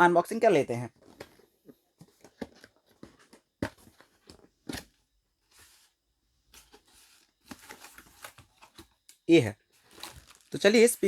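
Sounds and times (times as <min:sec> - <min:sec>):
packaging rustle: 0:09.7 - 0:11.0.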